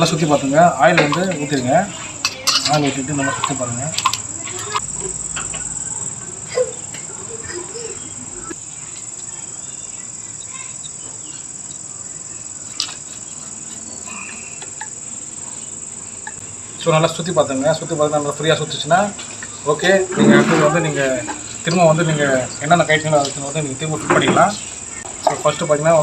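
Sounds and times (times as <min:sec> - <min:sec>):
cricket trill: 0:00.0 - 0:26.0.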